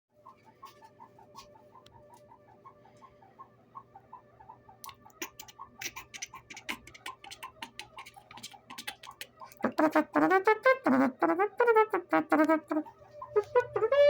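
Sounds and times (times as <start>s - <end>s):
sharp irregular clicks: 4.8s - 9.6s
refrigerator squeaky chirping: 12.4s - 14.0s.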